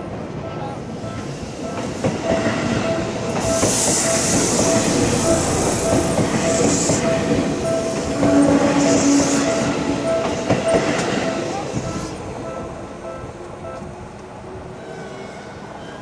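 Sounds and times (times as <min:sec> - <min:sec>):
train wheels clacking on rails: 0:00.0 - 0:14.3
crossing warning bell dinging: 0:00.0 - 0:14.4
high hiss: 0:01.4 - 0:08.1.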